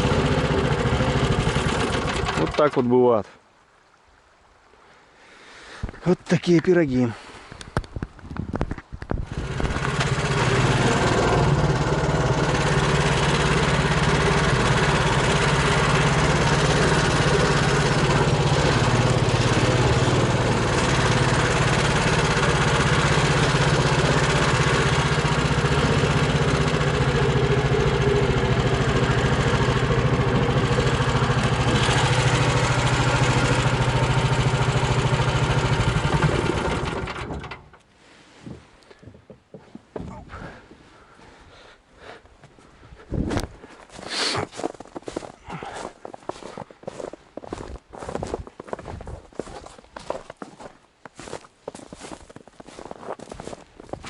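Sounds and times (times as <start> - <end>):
small engine running: 0.0 - 2.8, 9.2 - 37.7.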